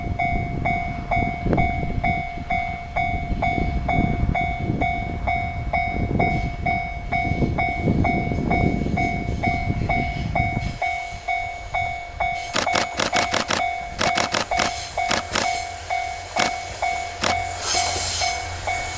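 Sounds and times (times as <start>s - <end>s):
diesel railcar rumbling: 0.0s - 18.9s
level-crossing warning bell ringing: 0.0s - 18.9s.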